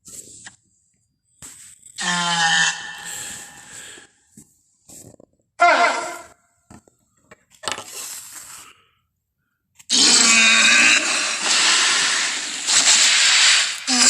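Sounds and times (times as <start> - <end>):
dinosaur creature calls: 2.0 - 3.8, 5.6 - 6.3
raspy creature call: 2.0 - 3.8, 5.6 - 6.3.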